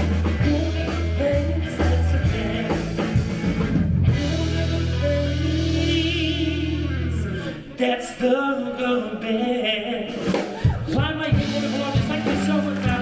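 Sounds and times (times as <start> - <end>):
low bass: 0.0 - 7.4
band music: 0.0 - 7.6, 10.1 - 13.0
person singing with vibrato: 0.2 - 3.2, 4.1 - 13.0.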